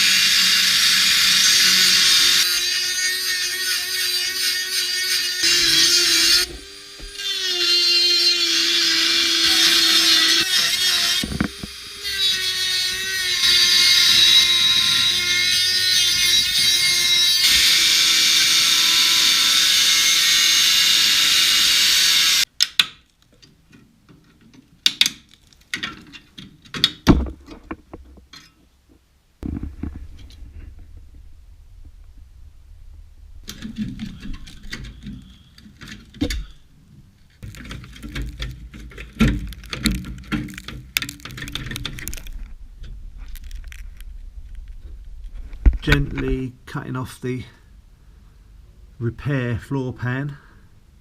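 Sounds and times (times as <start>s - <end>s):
power tool grinding steel: 0.0s - 22.5s
clicks and knocks: 37.4s - 44.9s.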